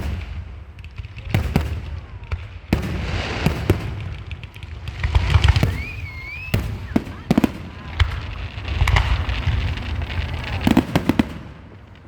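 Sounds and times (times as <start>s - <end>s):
fireworks booming: 0.0s - 12.0s
fireworks crackling: 0.0s - 12.0s
firework whistle: 5.2s - 8.2s.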